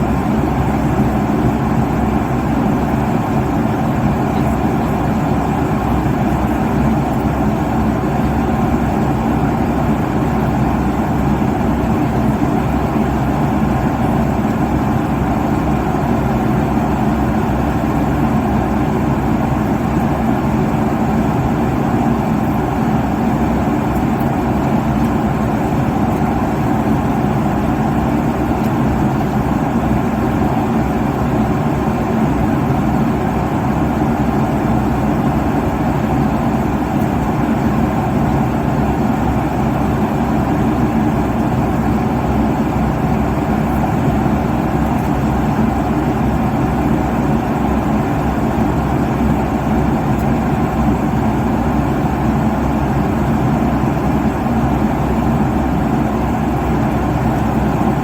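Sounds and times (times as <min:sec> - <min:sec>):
airliner cabin engine rush: 0:00.0 - 0:58.0.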